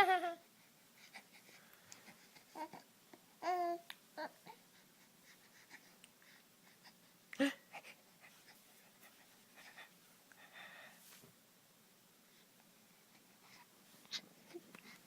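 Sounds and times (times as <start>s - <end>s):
baby cooing: 3.4s - 4.6s.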